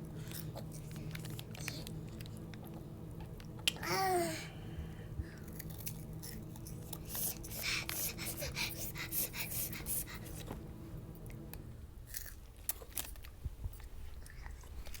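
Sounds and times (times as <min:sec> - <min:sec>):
crunchy chewing: 0:05.4 - 0:08.1, 0:12.1 - 0:15.0.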